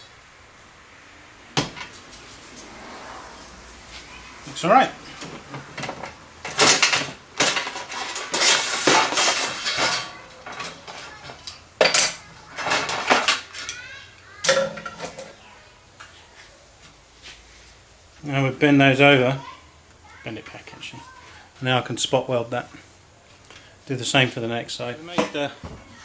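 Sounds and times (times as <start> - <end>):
sheet metal clanking and scraping: 4.9 - 13.7, 14.4 - 15.4.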